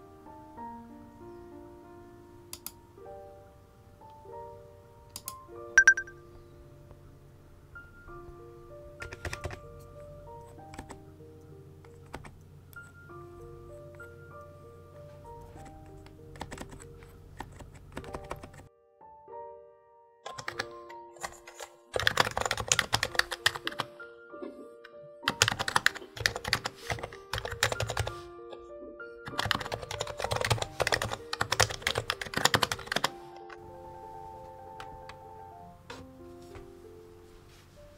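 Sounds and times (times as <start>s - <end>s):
melodic background music: 0.0s - 37.9s
fast keyboard typing: 5.8s - 6.1s, 9.0s - 9.6s, 10.7s - 11.0s, 11.9s - 12.4s, 15.4s - 18.7s, 20.3s - 23.9s, 25.3s - 28.2s, 29.2s - 33.1s.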